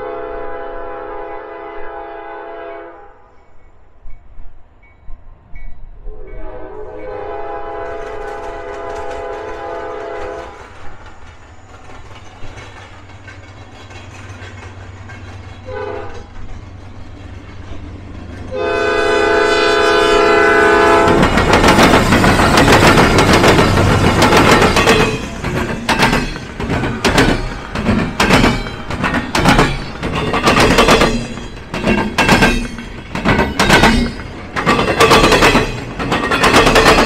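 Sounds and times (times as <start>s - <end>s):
locomotive air horn blasts: 0.0s - 3.3s, 6.0s - 10.6s, 15.7s - 16.3s, 18.5s - 21.2s
train rumbling and wheel clatter: 0.0s - 37.0s.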